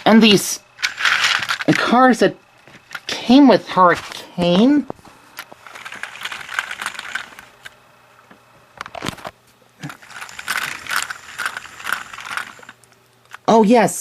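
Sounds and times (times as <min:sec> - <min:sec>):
plastic toy train clicking and rattling: 0:00.8 - 0:02.0, 0:05.4 - 0:07.7, 0:09.8 - 0:13.5.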